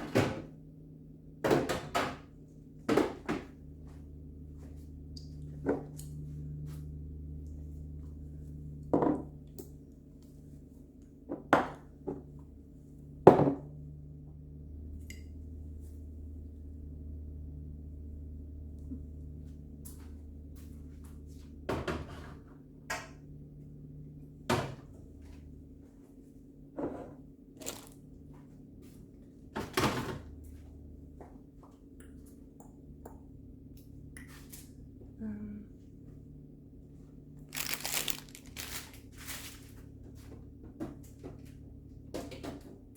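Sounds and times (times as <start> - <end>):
steady low hum: 0.0 - 29.6.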